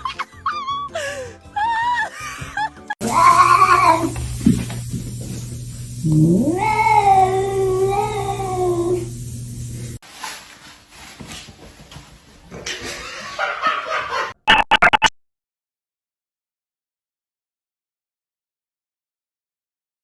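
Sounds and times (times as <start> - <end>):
cat yowling: 3.0 - 4.1, 6.0 - 9.1.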